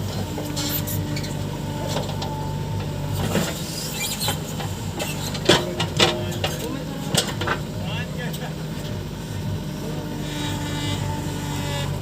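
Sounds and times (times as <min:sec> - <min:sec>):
diesel engine running: 0:00.0 - 0:12.0
metal clanks and knocks: 0:01.8 - 0:07.7.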